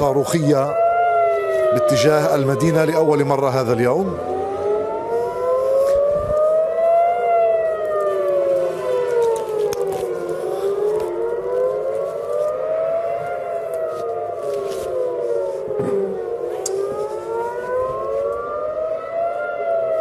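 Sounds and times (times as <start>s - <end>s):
air-raid sirens wailing: 0.0s - 20.0s.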